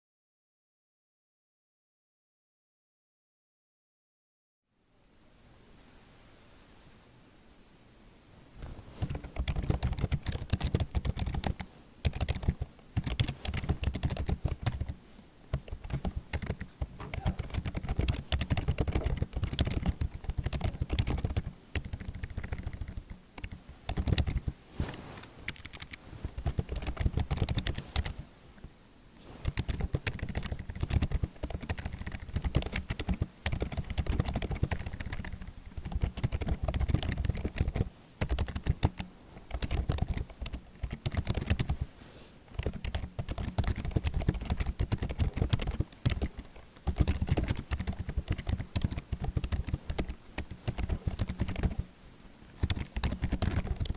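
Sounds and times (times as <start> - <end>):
fast typing on keyboard: 8.9 - 24.6, 25.4 - 28.3, 29.3 - 41.9, 42.5 - 52.0, 52.6 - 53.9.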